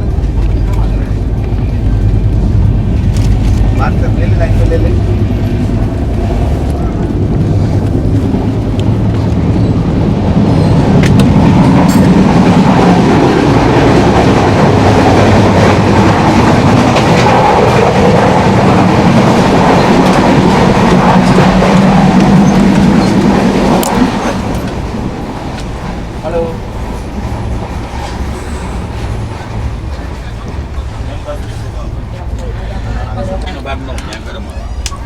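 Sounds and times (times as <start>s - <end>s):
train wheels rumbling on rails: 0.0s - 35.0s
sharp clicks of train wheels: 7.7s - 31.6s.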